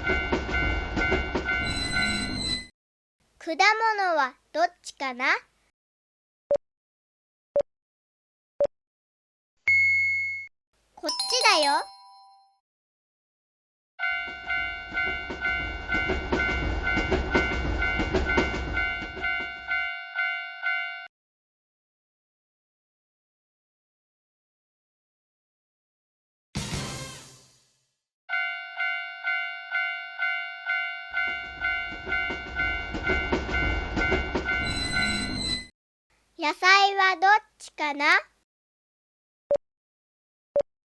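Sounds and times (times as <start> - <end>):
railroad crossing bell ringing: 0.0 - 2.6, 14.0 - 21.1, 28.3 - 35.6
train rumbling over rail joints: 0.0 - 2.6, 14.2 - 19.8, 31.2 - 35.6
wheels clacking over rail joints: 31.2 - 34.7.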